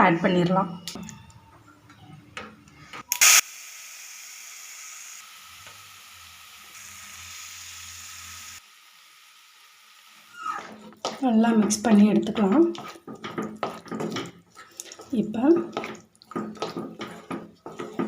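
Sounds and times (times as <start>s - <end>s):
hot oil sizzling: 3.2s - 18.0s.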